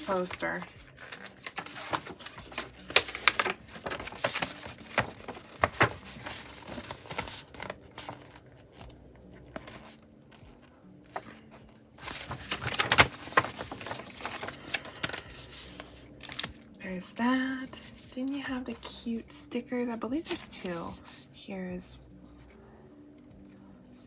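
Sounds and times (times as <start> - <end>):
paper rustling and crinkling: 0.0 - 10.0, 11.1 - 16.6, 17.6 - 19.1, 20.2 - 21.2.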